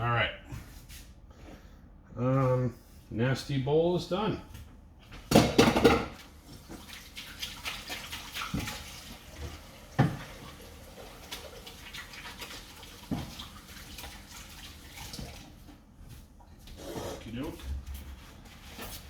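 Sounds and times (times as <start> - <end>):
tap water running into sink: 5.6 - 15.7.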